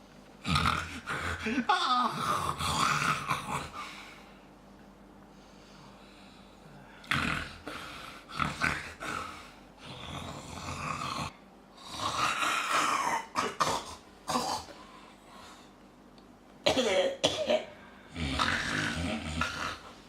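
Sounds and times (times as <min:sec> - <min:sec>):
man snoring: 0:00.4 - 0:03.8, 0:07.0 - 0:13.3, 0:18.1 - 0:20.0.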